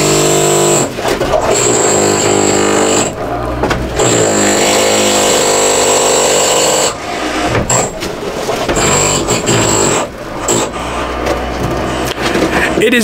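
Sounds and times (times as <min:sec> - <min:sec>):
power tool high whine: 0:00.0 - 0:07.9.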